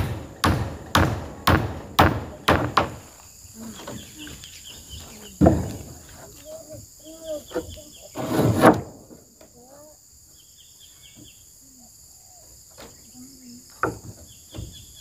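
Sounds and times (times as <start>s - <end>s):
hammer nailing metal roofing: 0.0s - 3.0s.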